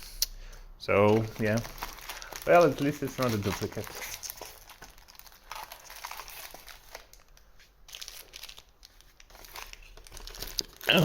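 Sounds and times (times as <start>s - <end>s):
packaging crinkling and rustling: 1.0s - 11.0s.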